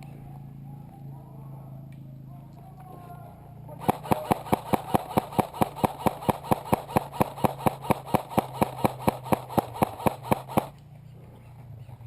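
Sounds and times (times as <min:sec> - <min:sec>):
steady hum: 0:03.7 - 0:10.8
airsoft gun firing: 0:03.8 - 0:10.8.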